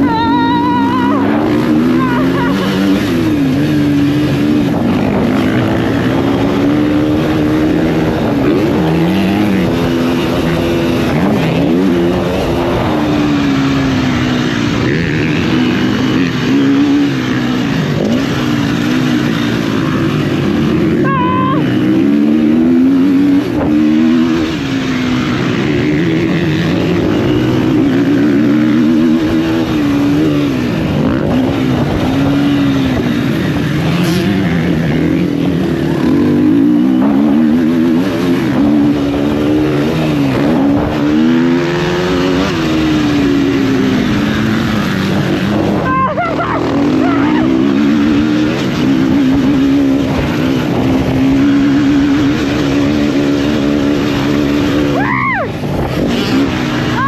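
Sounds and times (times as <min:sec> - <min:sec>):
motocross bike engine revving: 0:00.0 - 0:57.0.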